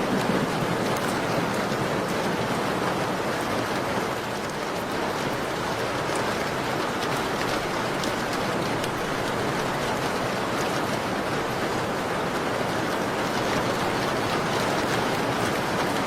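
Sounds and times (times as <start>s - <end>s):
steady rain falling: 0.0s - 16.0s.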